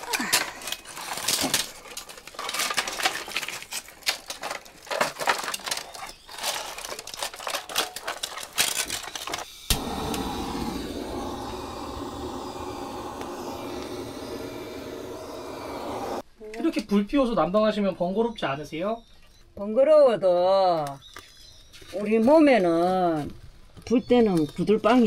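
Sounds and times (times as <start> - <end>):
steady even noise: 9.7 - 16.2.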